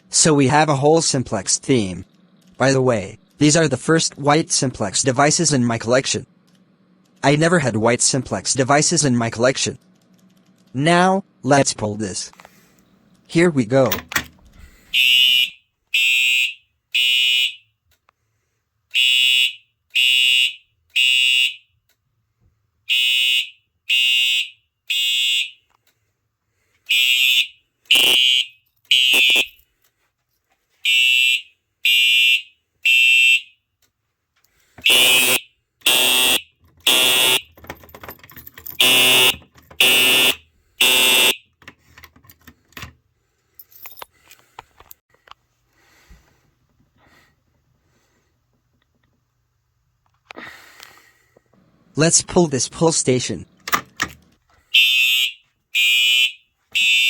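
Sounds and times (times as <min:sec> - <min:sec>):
fire alarm horn blasts: 0:14.9 - 0:17.8, 0:18.9 - 0:21.8, 0:22.8 - 0:25.7, 0:26.9 - 0:29.6, 0:30.8 - 0:33.7, 0:34.8 - 0:37.5, 0:38.8 - 0:41.5, 0:54.7 - 0:57.0.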